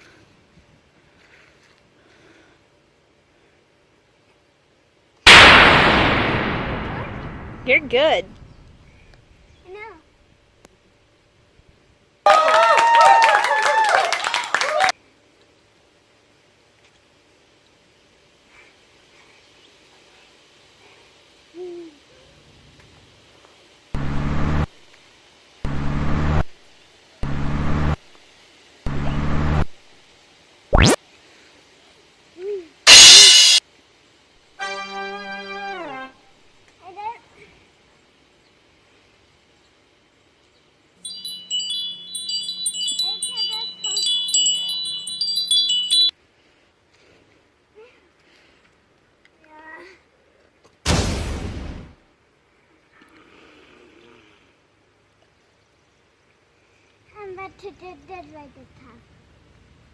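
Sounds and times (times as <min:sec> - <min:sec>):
chimes tinkling: 0:41.0 - 0:46.2.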